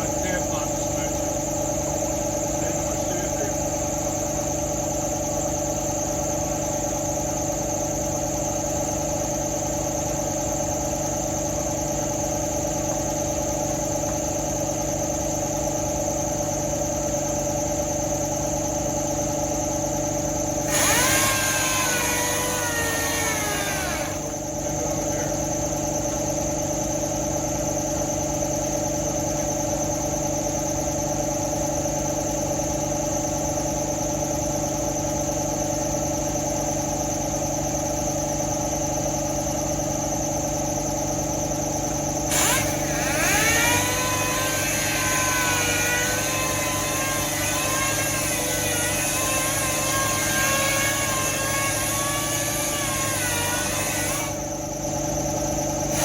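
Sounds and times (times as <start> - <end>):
machine humming: 19.4 - 26.6, 42.3 - 56.0
hissing burst with falling whine: 20.7 - 24.4.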